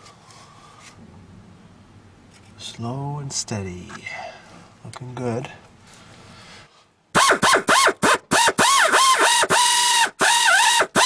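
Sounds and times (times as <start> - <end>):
drill bit grinding steel: 7.2 - 11.0
power drill whining: 7.2 - 11.0.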